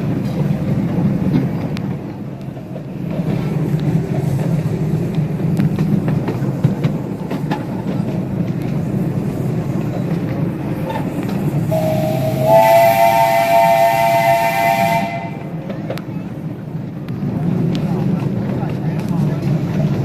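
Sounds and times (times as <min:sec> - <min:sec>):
train rolling on track: 0:00.0 - 0:20.0
steam locomotive chime whistle: 0:11.7 - 0:15.5.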